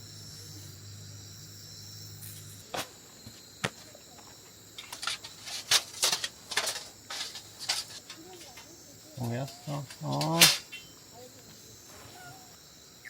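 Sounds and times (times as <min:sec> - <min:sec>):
crickets chirping: 0:00.0 - 0:13.0
rustling and clattering handling: 0:04.7 - 0:10.8.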